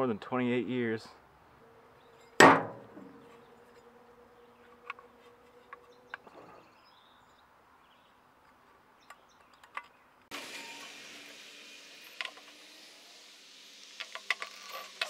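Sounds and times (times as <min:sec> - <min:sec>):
background hiss: 0:10.3 - 0:15.0
small parts clicking and tapping: 0:14.0 - 0:15.0.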